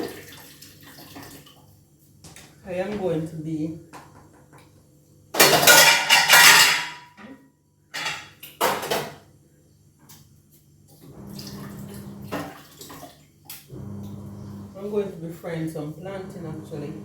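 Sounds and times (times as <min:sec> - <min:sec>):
pots and metal utensils clattering: 0:05.4 - 0:07.3, 0:07.9 - 0:09.2.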